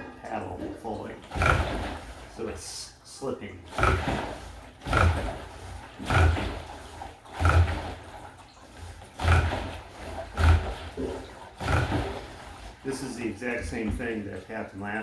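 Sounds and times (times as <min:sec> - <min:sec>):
water churning in rowing machine: 0:00.0 - 0:15.0.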